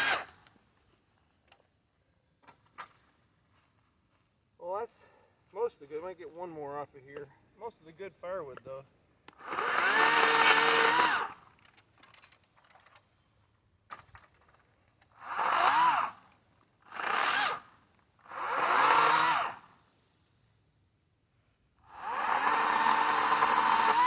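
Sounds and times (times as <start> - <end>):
electric chainsaw motor whine: 0.0 - 0.3, 9.4 - 11.4, 15.2 - 16.2, 16.8 - 19.7, 21.9 - 24.0.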